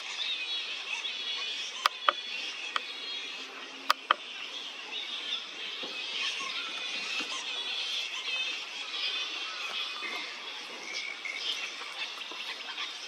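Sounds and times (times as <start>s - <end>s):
birds chirping: 0.0s - 13.0s
sharp clicks: 1.8s - 2.8s, 3.9s - 4.2s.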